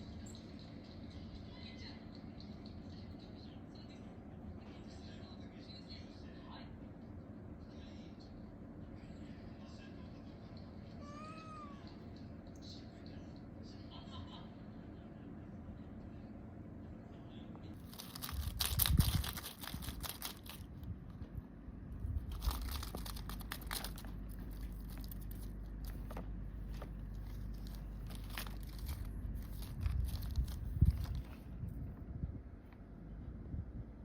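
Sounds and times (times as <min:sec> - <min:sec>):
steady low rumble: 0:15.2 - 0:34.0
crinkling and rustling: 0:17.7 - 0:21.4, 0:22.0 - 0:32.8.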